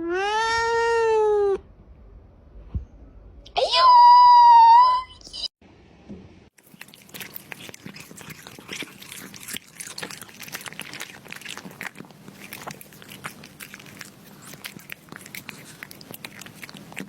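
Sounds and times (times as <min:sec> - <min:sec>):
cat chewing crunchily: 0:06.6 - 0:17.0.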